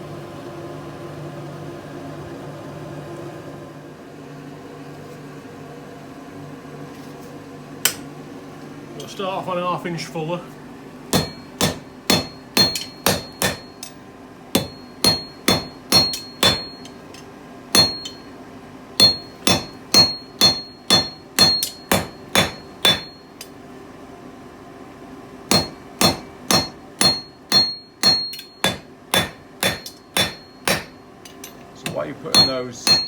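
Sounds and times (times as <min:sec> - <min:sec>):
hammer striking steel bar: 0:11.1 - 0:14.0, 0:14.6 - 0:18.3, 0:19.0 - 0:23.5, 0:25.5 - 0:33.0.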